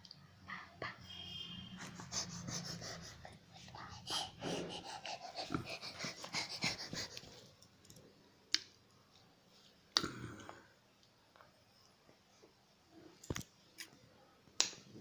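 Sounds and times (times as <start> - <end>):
baby making wheezy noises: 1.8 - 7.1.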